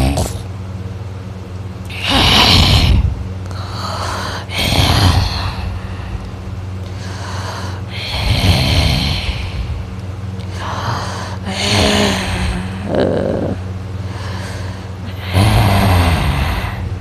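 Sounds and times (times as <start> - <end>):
man snoring: 0.0 - 0.4, 1.9 - 5.8, 7.4 - 9.7, 10.6 - 16.9
steady low hum: 0.0 - 17.0.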